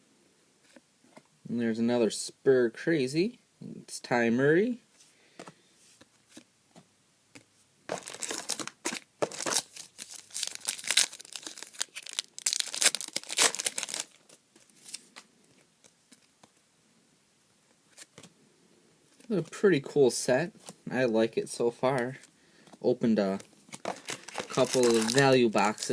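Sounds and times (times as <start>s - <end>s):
wrapper tearing and crinkling: 7.9s - 15.1s, 23.8s - 25.9s.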